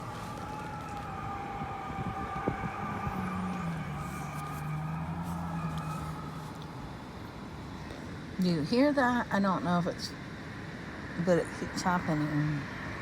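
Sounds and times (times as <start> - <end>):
steady humming drone: 0.0 - 13.0.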